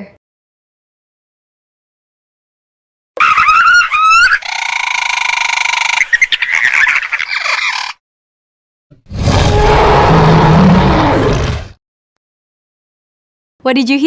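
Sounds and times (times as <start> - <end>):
dinosaur squeals: 3.2 - 8.0, 9.1 - 11.7
deep rough dinosaur call: 9.1 - 11.7.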